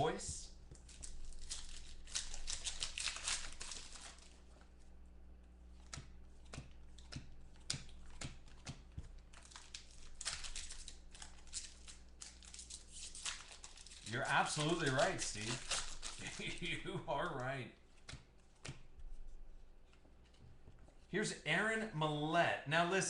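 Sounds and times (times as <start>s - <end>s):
foil wrappers crinkling and tearing: 0.0s - 5.0s, 6.7s - 18.1s
sharp clicks of cards handled: 5.8s - 19.1s.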